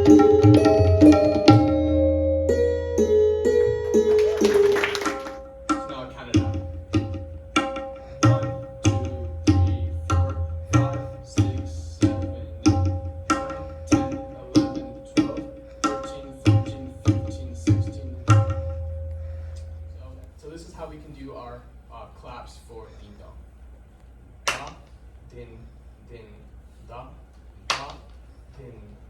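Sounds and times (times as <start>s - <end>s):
tabla playing a slow rhythm: 0.0s - 4.5s, 5.4s - 20.1s.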